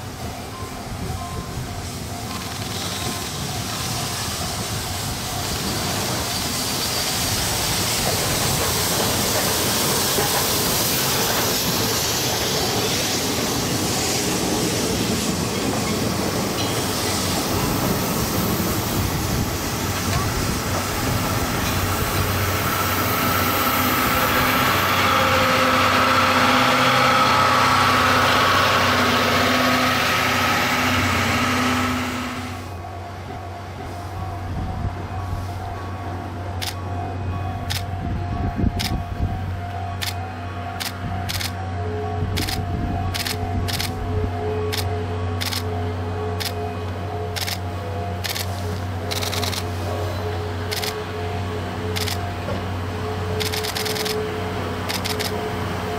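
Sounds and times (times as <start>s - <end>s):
train running on rails: 0.0s - 55.9s
droning engine tone: 21.8s - 35.5s, 36.6s - 55.9s.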